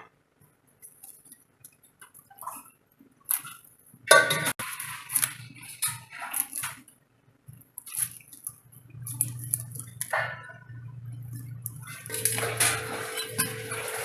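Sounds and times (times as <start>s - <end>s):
low steady hum: 3.4s - 14.0s
water splashing in a vessel: 11.6s - 14.0s.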